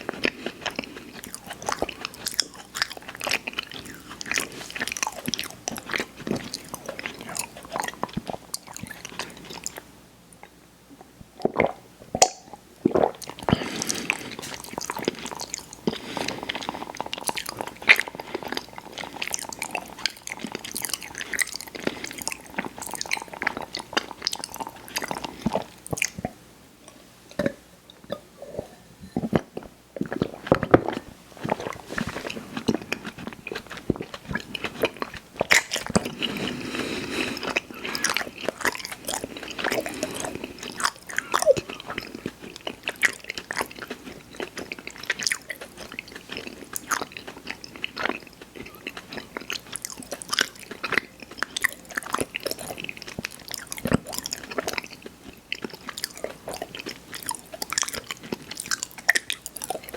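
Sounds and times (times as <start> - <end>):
biting and chewing: 0.0 - 9.8, 29.3 - 59.9.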